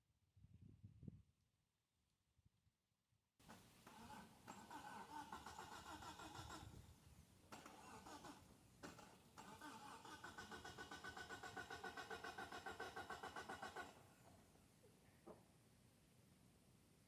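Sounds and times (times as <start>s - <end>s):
starter motor cranking engine: 3.5s - 6.8s, 7.5s - 14.1s.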